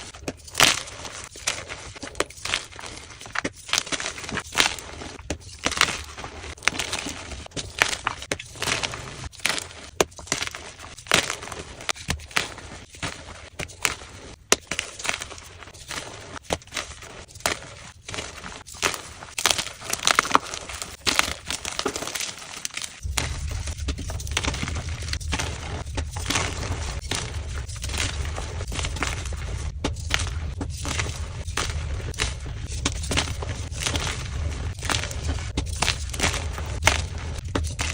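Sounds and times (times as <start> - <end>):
chalk crunching and snapping: 0.0 - 37.9
steady low hum: 23.0 - 37.9.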